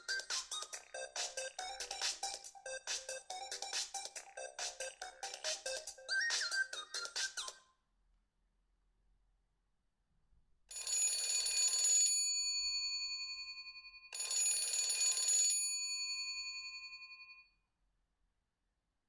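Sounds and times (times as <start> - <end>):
old bell telephone ringtone: 10.7 - 17.5.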